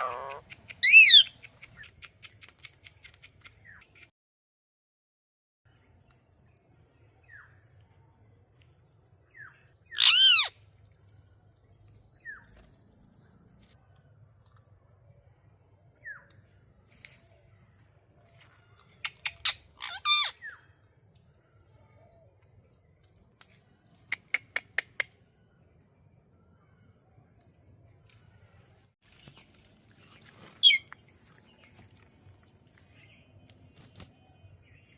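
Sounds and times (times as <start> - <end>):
parakeet chirps and squawks: 0.0 - 1.3, 9.9 - 10.5, 19.1 - 20.6, 30.6 - 30.9.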